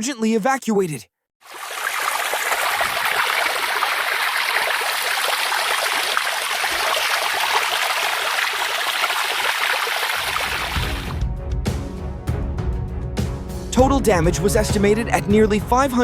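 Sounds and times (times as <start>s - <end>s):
floodwater rushing: 1.4s - 11.2s.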